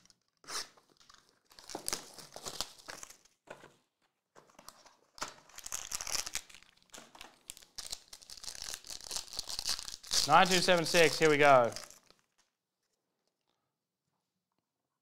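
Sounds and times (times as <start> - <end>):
plastic wrapping torn and crinkled: 0.0 - 3.4, 5.2 - 12.4.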